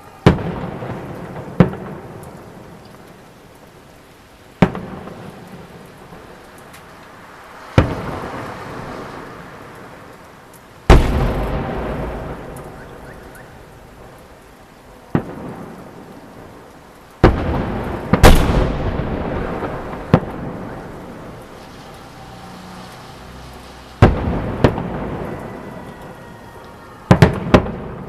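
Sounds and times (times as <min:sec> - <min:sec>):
fireworks booming: 0:00.0 - 0:03.7, 0:04.5 - 0:06.8, 0:07.7 - 0:10.0, 0:10.8 - 0:28.0
rolling echo: 0:10.9 - 0:14.4, 0:15.0 - 0:22.3.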